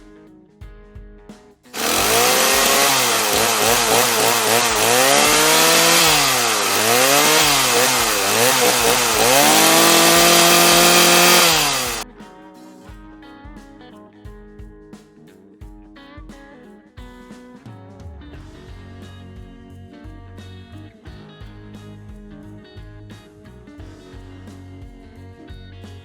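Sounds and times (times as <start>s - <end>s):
chainsaw revving: 1.8s - 12.0s.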